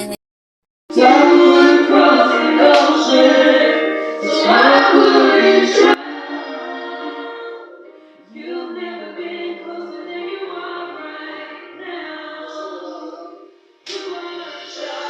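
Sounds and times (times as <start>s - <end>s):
choir-like singing: 0.9s - 15.0s.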